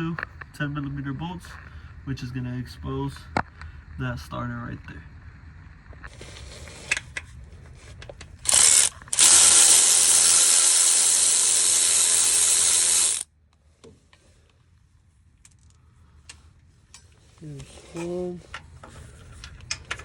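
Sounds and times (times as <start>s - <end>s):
ratchet wrench ratcheting: 8.4s - 13.3s.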